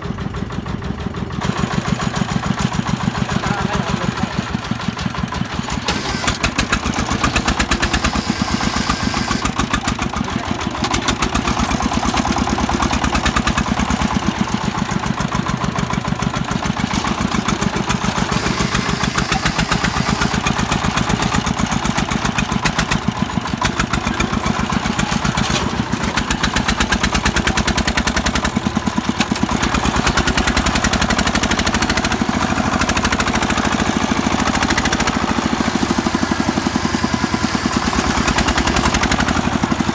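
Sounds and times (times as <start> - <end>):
diesel engine chugging: 0.0 - 39.9.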